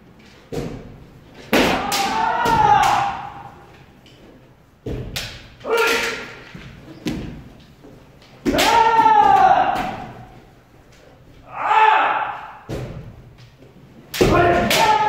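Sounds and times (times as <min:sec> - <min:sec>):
bamboo sword strikes: 0:01.5 - 0:03.4, 0:08.4 - 0:10.1, 0:14.1 - 0:15.0
person shouting: 0:01.7 - 0:03.5, 0:08.5 - 0:10.3, 0:11.4 - 0:12.7, 0:14.3 - 0:15.0.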